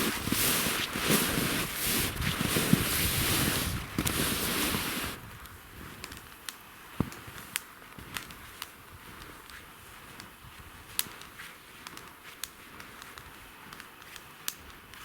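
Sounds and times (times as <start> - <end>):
gusty wind buffeting microphone: 0.0 - 6.0.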